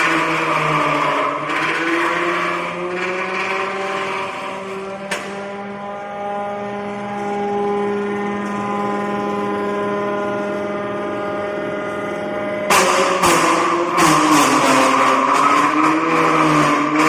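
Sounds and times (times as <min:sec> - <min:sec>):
rough rasping noise: 0:00.0 - 0:06.5
machine motor hum: 0:01.4 - 0:13.4.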